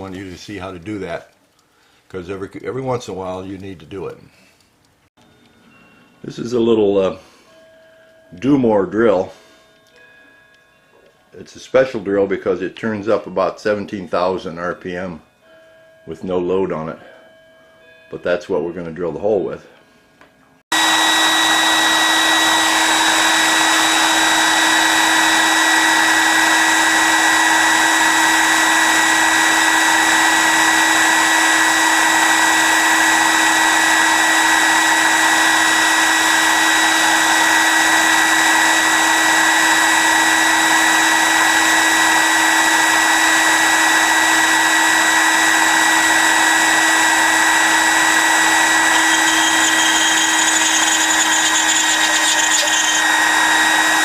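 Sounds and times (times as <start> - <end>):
rotary tool whining: 20.7 - 54.0.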